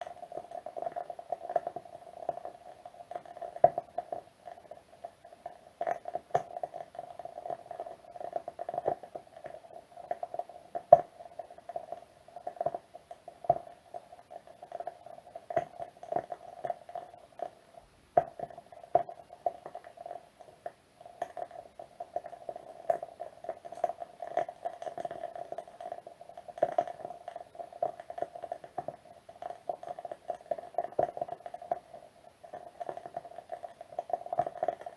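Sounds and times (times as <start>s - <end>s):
candle wick crackling and popping: 0.0s - 34.9s.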